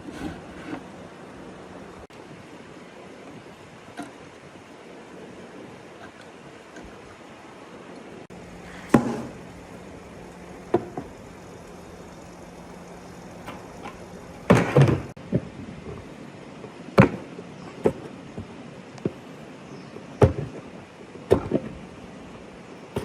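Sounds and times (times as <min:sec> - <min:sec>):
faint low hum: 0:08.3 - 0:16.0
sharp knocks and clunks: 0:08.6 - 0:11.1, 0:13.2 - 0:15.1.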